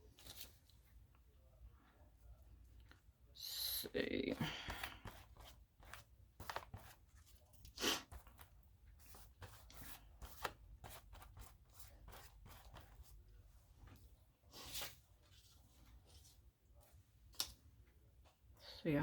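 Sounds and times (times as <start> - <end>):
paper rustling: 0.0 - 1.0, 4.4 - 13.1.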